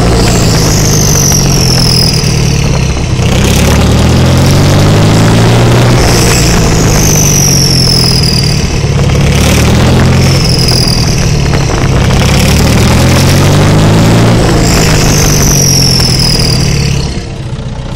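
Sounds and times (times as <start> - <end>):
diesel tractor engine revving: 0.0 - 17.9
turbo whistle falling in pitch: 0.1 - 2.4, 14.4 - 17.0.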